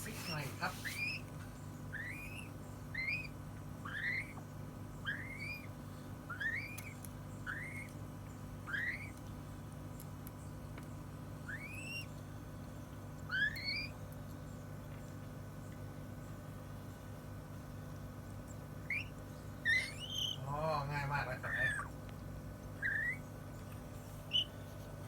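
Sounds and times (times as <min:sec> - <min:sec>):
bird chirping: 0:00.0 - 0:05.7, 0:06.3 - 0:09.2, 0:11.4 - 0:12.2, 0:13.3 - 0:14.6, 0:18.5 - 0:20.6, 0:22.8 - 0:24.6
steady low hum: 0:00.0 - 0:25.0.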